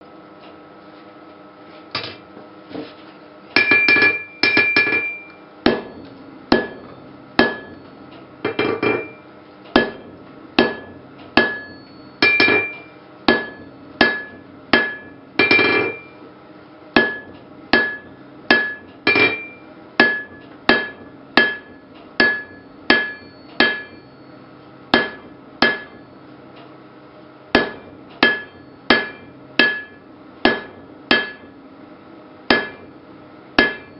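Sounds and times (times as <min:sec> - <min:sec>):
hammer striking iron on anvil: 0:03.6 - 0:16.2, 0:17.0 - 0:24.1, 0:24.9 - 0:26.1, 0:27.5 - 0:31.6, 0:32.4 - 0:33.0, 0:33.6 - 0:33.9.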